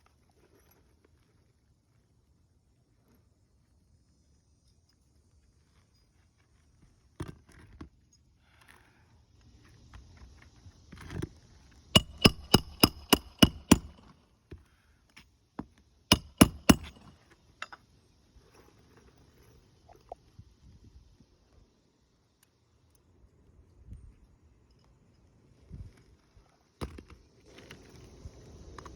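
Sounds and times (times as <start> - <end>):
hammer striking nails: 12.0 - 14.1, 16.1 - 17.1.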